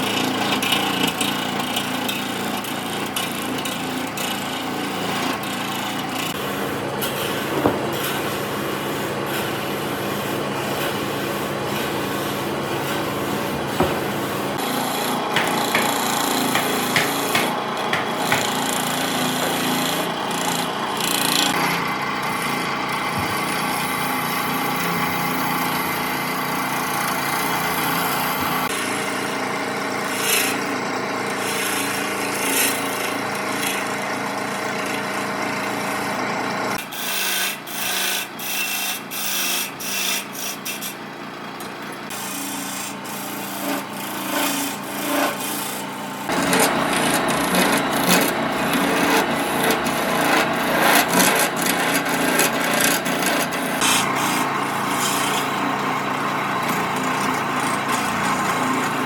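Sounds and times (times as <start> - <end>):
machine running with faint hum: 0.0 - 59.0
back-and-forth tool strokes: 7.0 - 20.5, 42.1 - 55.8.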